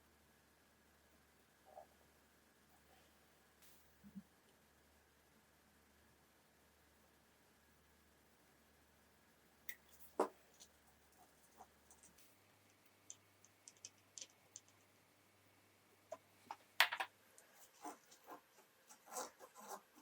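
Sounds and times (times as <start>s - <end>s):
small tools clicking and tapping: 11.9s - 14.9s.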